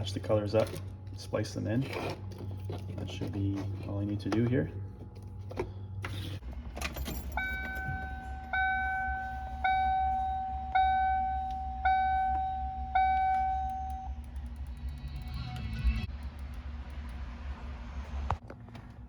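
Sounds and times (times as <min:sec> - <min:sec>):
car dashboard warning chime: 0:07.4 - 0:14.1.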